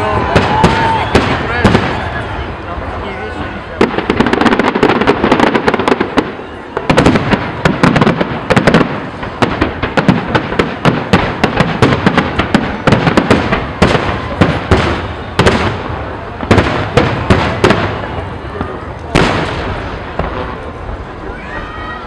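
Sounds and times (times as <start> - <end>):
fireworks bursts and crackles: 0.0 - 22.0.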